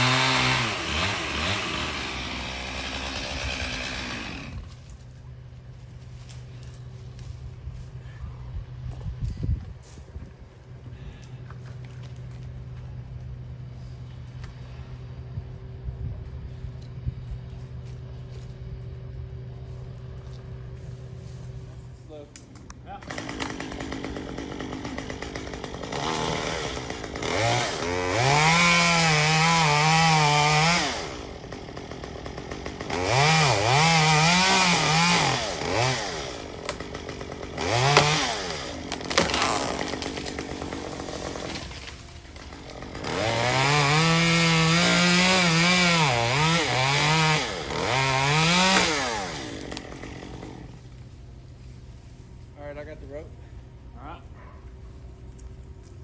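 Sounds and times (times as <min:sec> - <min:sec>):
chainsaw cutting wood: 0:00.0 - 0:05.0, 0:23.0 - 0:51.0.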